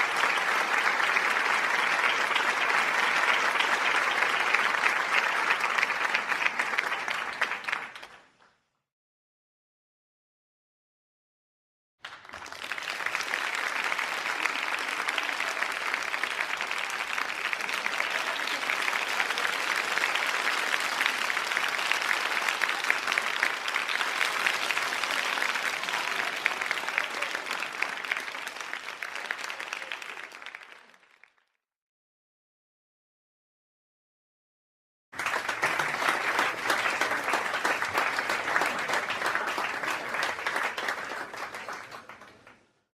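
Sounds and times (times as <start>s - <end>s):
crowd applause: 0.0s - 8.5s, 12.0s - 31.6s, 35.2s - 42.8s.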